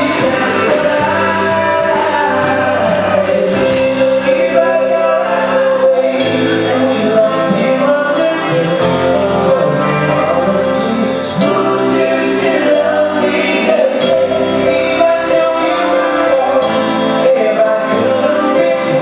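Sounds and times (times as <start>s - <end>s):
live band playing: 0.0s - 19.0s
person singing: 0.0s - 19.0s.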